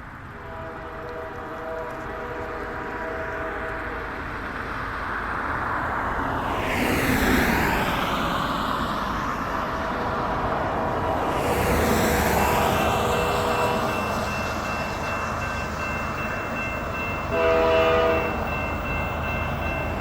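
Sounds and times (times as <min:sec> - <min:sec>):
train air horn: 0:00.4 - 0:04.2, 0:12.9 - 0:14.7, 0:16.2 - 0:19.4.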